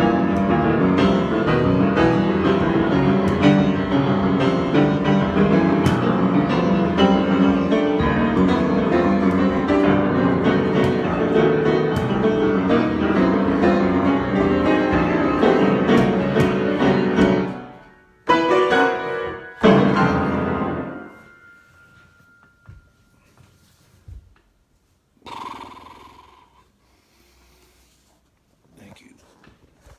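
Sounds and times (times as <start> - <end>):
solo piano improvisation: 0.0 - 23.6.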